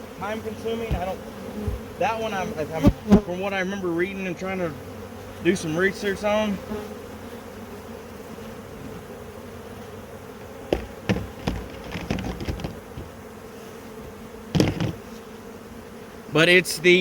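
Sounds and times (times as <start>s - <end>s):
honeybees buzzing: 0.0s - 17.0s
sharp knocks and clicks: 10.7s - 13.1s.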